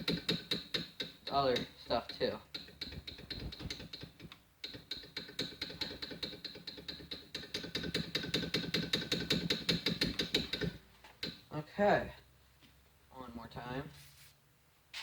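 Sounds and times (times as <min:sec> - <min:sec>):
rapid mechanical clicking: 0:00.0 - 0:11.4.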